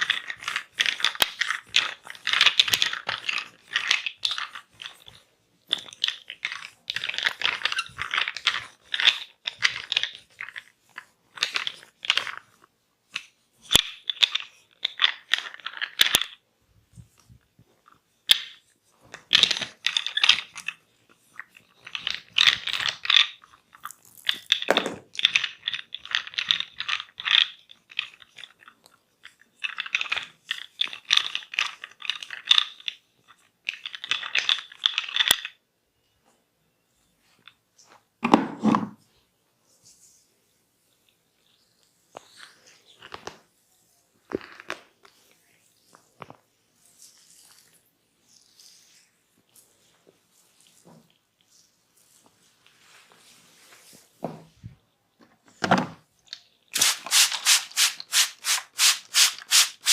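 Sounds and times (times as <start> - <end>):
fingers scratching through hair: 46.8 - 49.7, 56.8 - 59.9.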